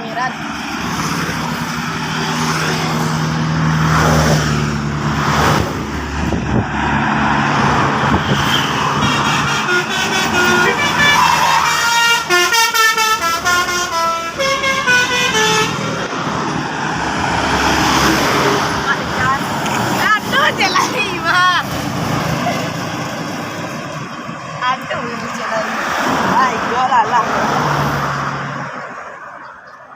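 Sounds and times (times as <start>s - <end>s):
bus engine running: 0.0s - 27.2s
multi-tone bus horn melody: 8.0s - 16.1s.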